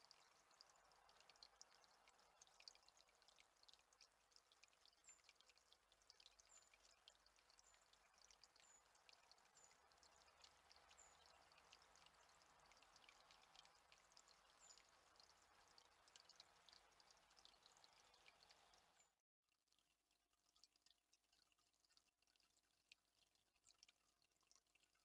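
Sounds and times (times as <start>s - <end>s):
soft steady hiss: 0.0s - 19.1s
small birds chirping: 6.3s - 19.1s.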